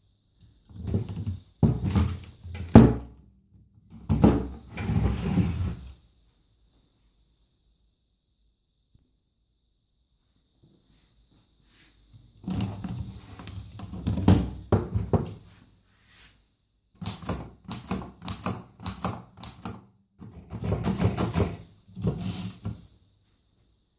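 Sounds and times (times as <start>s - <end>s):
typewriter keystrokes clacking: 17.0s - 19.8s.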